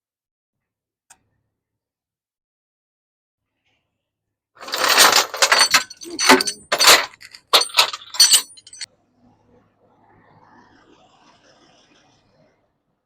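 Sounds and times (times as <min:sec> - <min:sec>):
metallic clattering and clanking: 0:04.6 - 0:08.9.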